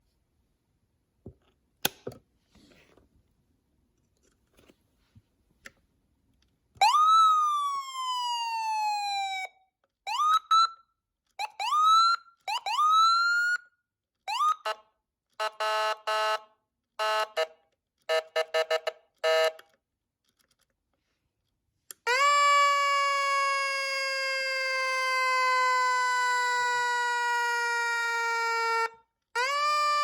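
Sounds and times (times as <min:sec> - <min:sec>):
electronic siren wailing: 0:06.8 - 0:09.5, 0:22.1 - 0:30.0
siren whoops: 0:06.8 - 0:13.7, 0:14.3 - 0:14.8, 0:22.1 - 0:30.0.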